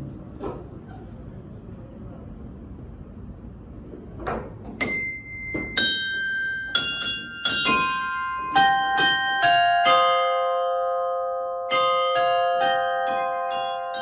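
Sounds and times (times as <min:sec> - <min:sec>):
church bells ringing: 0:04.8 - 0:14.0.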